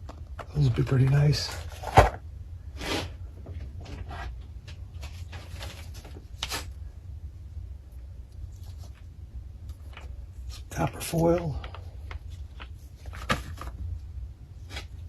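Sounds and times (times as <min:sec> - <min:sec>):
steady low hum: 0:00.0 - 0:15.0
packaging rustles and scrapes: 0:00.6 - 0:03.2, 0:03.8 - 0:06.8.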